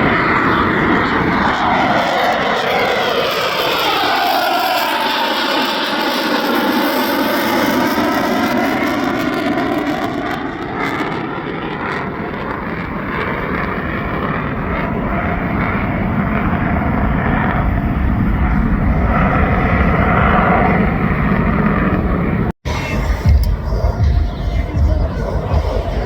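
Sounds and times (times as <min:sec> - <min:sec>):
fighter jet flying past: 0:00.0 - 0:26.0.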